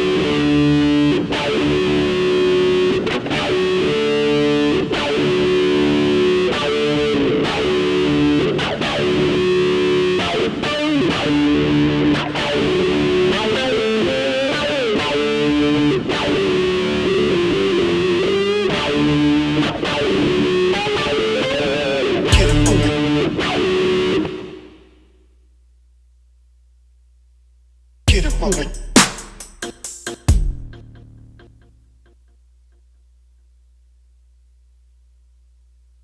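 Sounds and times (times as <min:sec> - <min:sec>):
instrumental breakbeat music: 0:22.3 - 0:23.1, 0:28.1 - 0:31.8.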